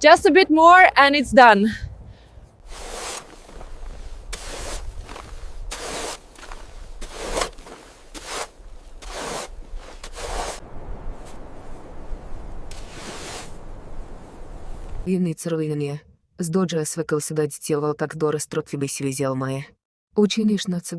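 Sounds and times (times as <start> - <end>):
rough scraping strokes: 2.6 - 15.1.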